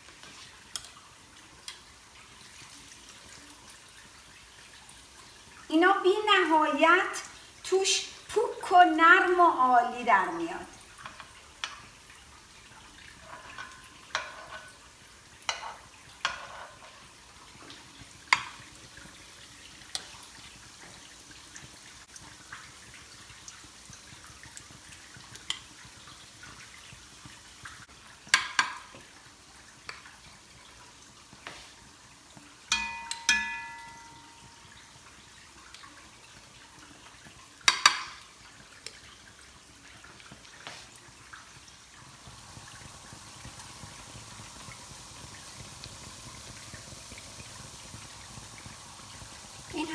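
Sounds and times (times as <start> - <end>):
patties sizzling in oil: 0.0 - 49.9
utensil clicking against pan: 37.7 - 38.2.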